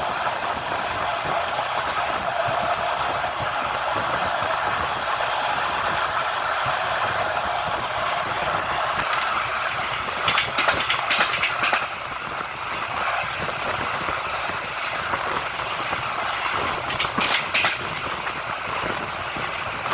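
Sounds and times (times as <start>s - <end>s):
train wheels rumbling on rails: 0.0s - 19.9s
wheels clacking over rail joints: 8.9s - 19.9s.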